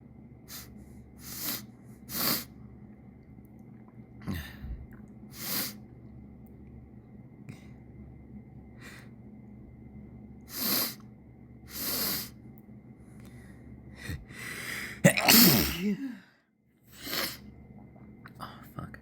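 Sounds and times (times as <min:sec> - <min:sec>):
person sniffling: 0:00.5 - 0:02.5, 0:04.3 - 0:05.8, 0:10.5 - 0:11.0, 0:11.7 - 0:12.4
sharp breaths through nose: 0:00.5 - 0:02.5, 0:05.3 - 0:05.8, 0:10.5 - 0:11.0, 0:11.7 - 0:12.4
loud voiced sneeze: 0:15.0 - 0:16.2.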